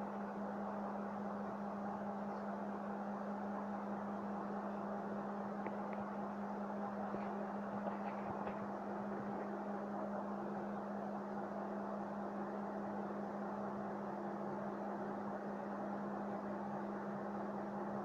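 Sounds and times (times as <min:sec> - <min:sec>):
mechanical hum: 0:00.0 - 0:18.0.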